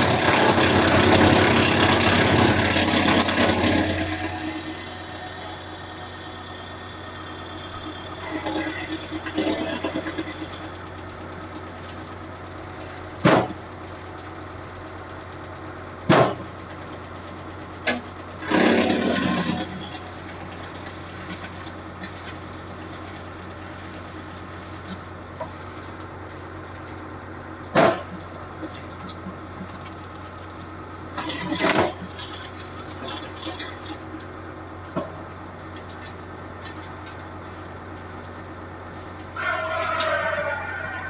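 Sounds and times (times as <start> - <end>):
rough noisy burst: 0.0 - 10.8
wood chipper engine idling: 0.0 - 41.0.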